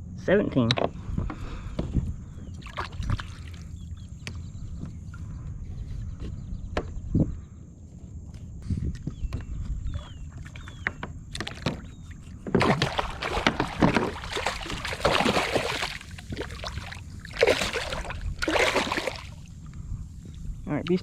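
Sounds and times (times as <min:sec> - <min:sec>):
water splashing around kayak: 0:02.6 - 0:03.8, 0:10.4 - 0:19.6.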